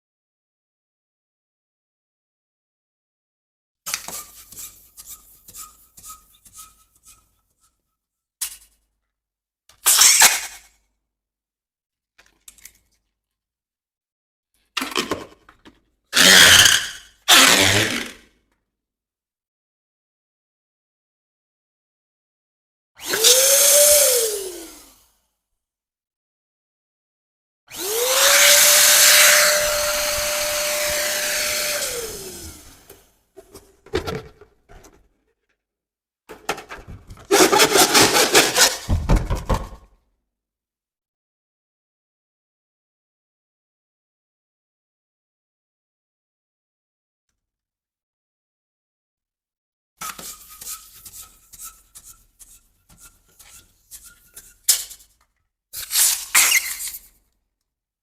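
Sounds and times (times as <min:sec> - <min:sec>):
balloon squeaking and rubbing: 0:16.2 - 0:18.0, 0:37.3 - 0:39.0, 0:55.8 - 0:57.1
balloon sharp crack: 0:37.3 - 0:39.6, 0:55.8 - 0:57.1.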